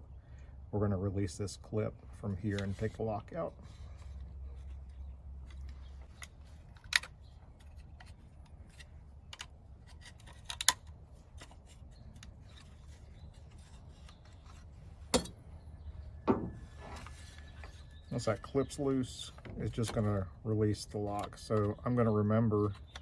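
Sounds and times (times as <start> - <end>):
plastic and metal clicks and scraping: 4.0 - 15.3, 20.8 - 23.0.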